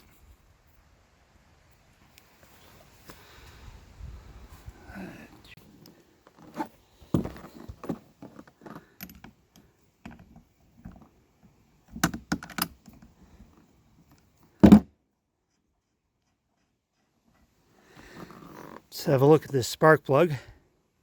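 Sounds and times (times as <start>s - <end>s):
thump: 14.6s - 14.9s.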